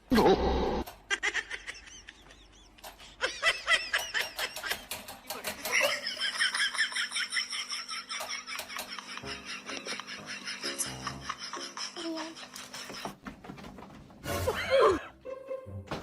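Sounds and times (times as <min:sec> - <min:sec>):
high-pitched laughter: 0:05.6 - 0:13.1, 0:14.4 - 0:15.7.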